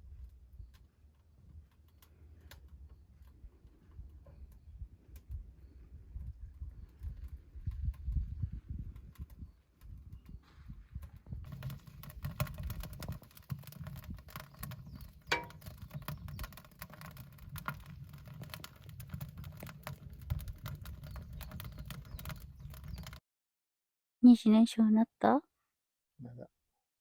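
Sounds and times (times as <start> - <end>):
low rumble of stove: 0.0 - 23.2
wood stove crackling: 11.4 - 23.2.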